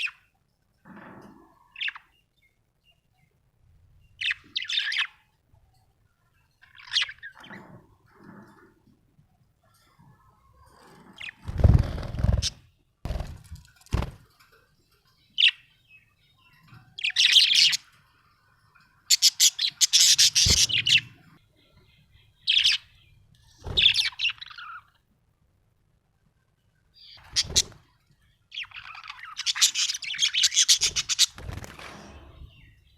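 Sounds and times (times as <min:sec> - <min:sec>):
budgerigar chirping: 0:19.1 - 0:21.2.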